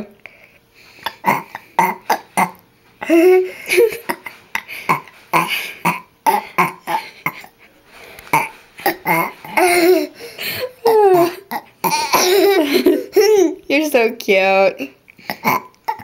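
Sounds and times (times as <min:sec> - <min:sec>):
girl burping: 0:01.0 - 0:07.5, 0:10.8 - 0:13.5, 0:15.3 - 0:16.0.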